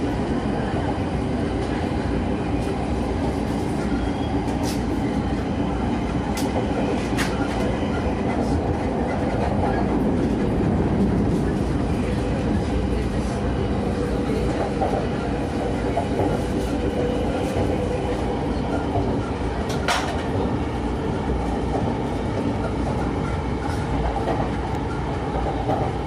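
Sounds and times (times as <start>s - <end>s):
train wheels rumbling on rail: 0.0s - 26.0s.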